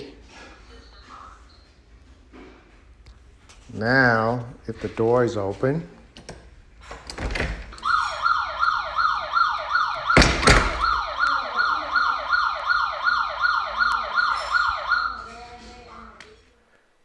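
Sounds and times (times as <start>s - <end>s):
alarm siren wailing: 7.7s - 16.0s
loud thud: 10.1s - 11.1s.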